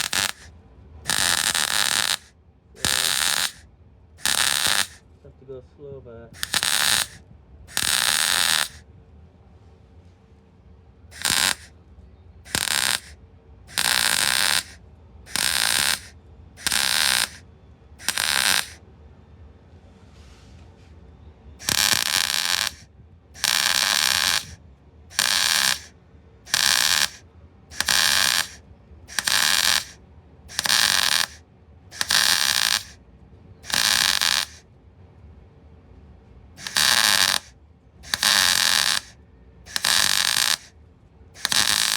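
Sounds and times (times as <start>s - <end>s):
welder crackling hiss: 0.0s - 0.5s, 1.1s - 3.6s, 4.2s - 5.0s, 6.3s - 8.8s, 11.1s - 11.7s, 12.5s - 17.4s, 18.0s - 18.8s, 21.6s - 25.9s, 26.5s - 33.0s, 33.6s - 34.6s, 36.6s - 40.7s, 41.4s - 41.9s.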